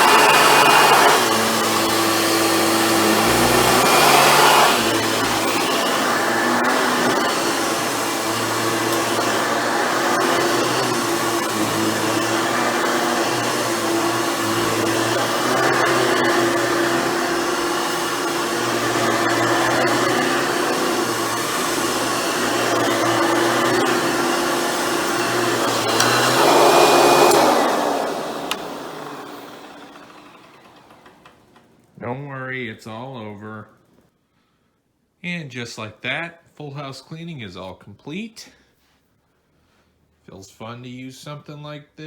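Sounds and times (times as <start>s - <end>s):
vacuum cleaner running: 0.0s - 32.0s
vacuum switch click: 25.9s - 29.1s.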